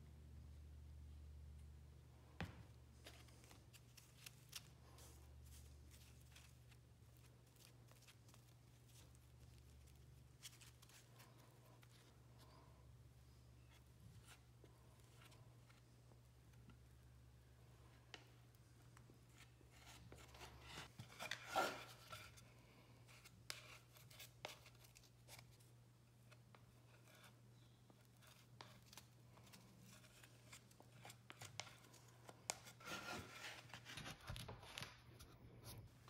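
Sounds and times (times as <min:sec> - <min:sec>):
low steady hum: 0:00.0 - 0:36.0.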